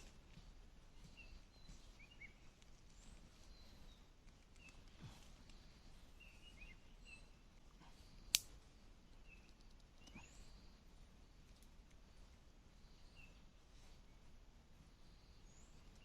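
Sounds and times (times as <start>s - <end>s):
faint outdoor hiss: 0.0s - 16.0s
faint bird chirps: 0.9s - 16.0s.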